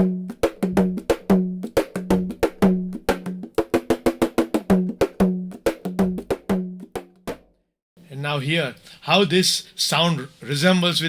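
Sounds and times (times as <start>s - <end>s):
frame drum played in quick rhythm: 0.0s - 7.5s.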